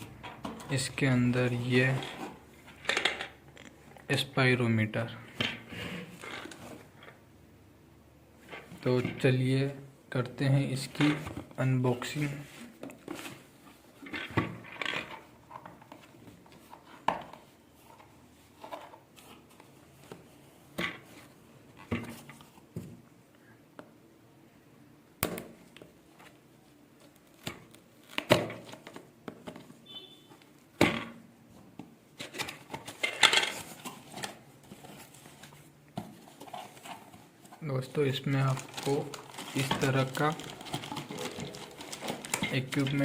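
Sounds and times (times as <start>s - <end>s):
packaging rustling: 32.2s - 43.0s.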